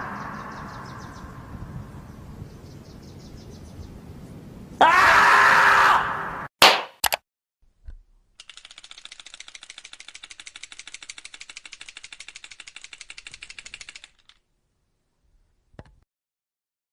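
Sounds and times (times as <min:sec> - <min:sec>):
rapid clicking sound effect: 0:08.4 - 0:14.4.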